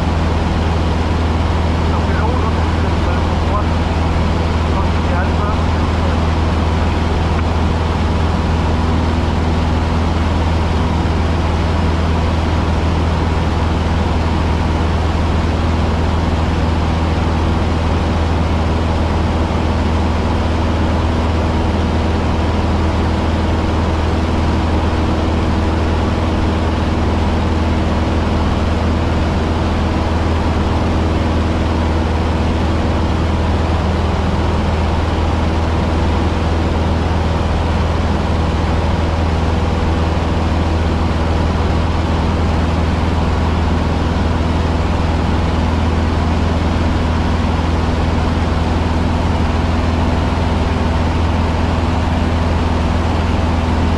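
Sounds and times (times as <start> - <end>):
aircraft engine and propeller droning: 0.0 - 53.9.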